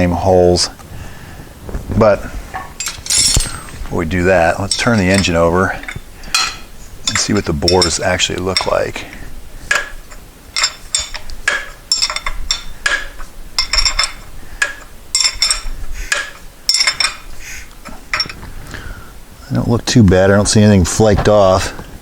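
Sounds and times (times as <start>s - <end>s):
sharp metallic clicks and clinks: 2.8s - 3.8s, 10.6s - 17.2s.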